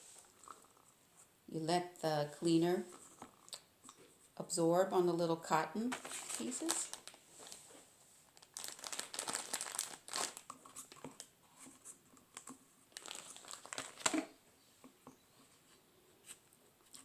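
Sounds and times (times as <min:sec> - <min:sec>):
cotton pads crinkling and rustling: 0:05.4 - 0:17.0.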